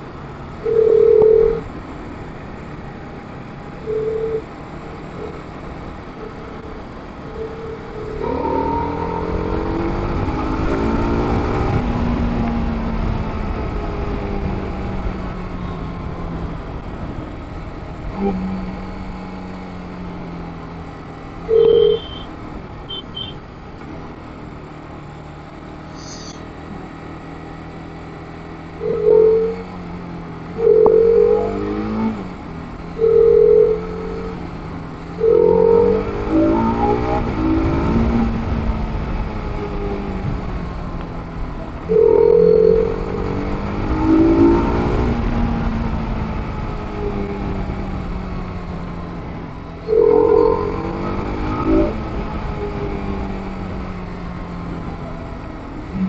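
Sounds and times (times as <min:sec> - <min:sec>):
low wind rumble: 0:00.0 - 0:26.3, 0:26.9 - 0:56.0
motorcycle engine accelerating: 0:00.0 - 0:56.0
short horn beeps: 0:21.5 - 0:22.3, 0:22.9 - 0:23.4.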